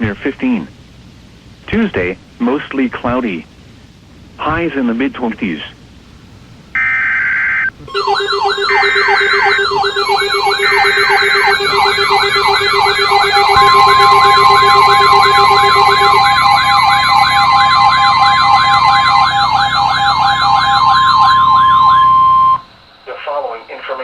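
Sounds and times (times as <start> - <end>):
data bursts: 6.8 - 22.7
siren alarms sweeping up and down: 6.8 - 22.7
steady buzzing beep: 6.8 - 22.7
steady warning alarm tone: 6.8 - 22.8.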